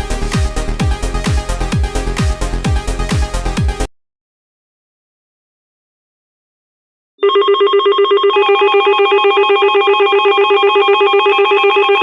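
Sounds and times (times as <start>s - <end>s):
electronic alert tone pulsing: 7.2s - 12.0s.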